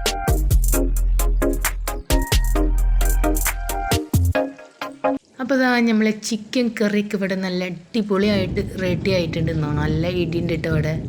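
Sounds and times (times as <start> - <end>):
electronic music: 0.0 - 5.2.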